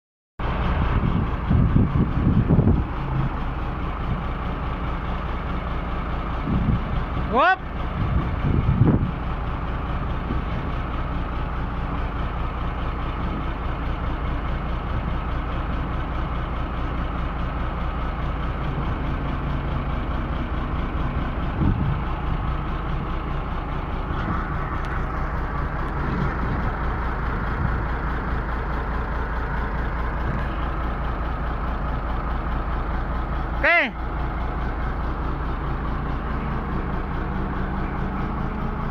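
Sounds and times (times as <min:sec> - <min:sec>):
bulldozer diesel engine running: 0:00.4 - 0:38.9.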